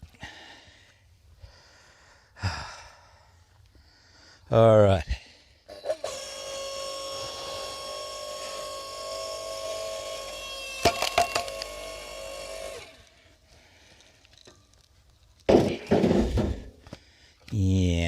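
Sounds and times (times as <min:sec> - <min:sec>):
log splitter whining: 0:05.7 - 0:13.6
wood cracking as it splits: 0:09.0 - 0:13.1, 0:13.9 - 0:16.5.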